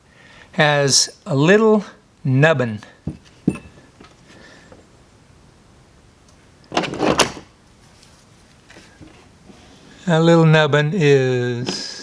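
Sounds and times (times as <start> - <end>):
parts rattling: 3.1 - 4.2.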